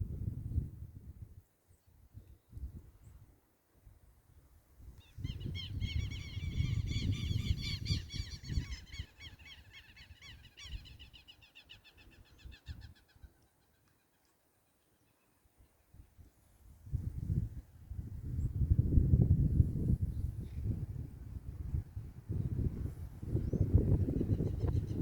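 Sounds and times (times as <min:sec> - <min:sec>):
wind rumble on microphone: 0:00.0 - 0:03.4, 0:04.3 - 0:11.1, 0:16.0 - 0:25.0.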